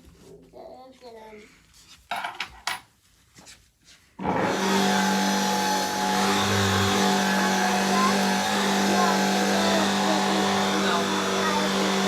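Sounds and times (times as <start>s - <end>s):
motor humming: 4.2s - 12.0s.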